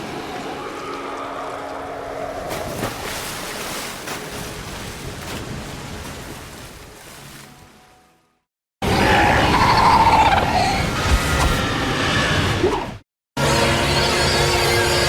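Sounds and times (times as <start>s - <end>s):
rushing surf-like water: 0.0s - 8.1s.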